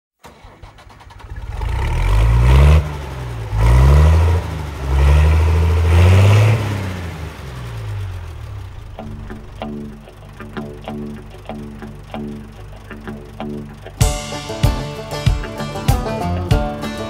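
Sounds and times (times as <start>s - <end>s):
vehicle engine accelerating: 0.7s - 17.0s.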